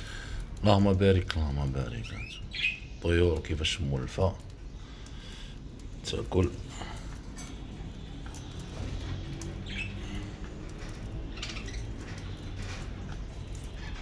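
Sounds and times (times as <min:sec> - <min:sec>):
budgerigars chirping: 0:02.1 - 0:03.2, 0:08.6 - 0:14.0.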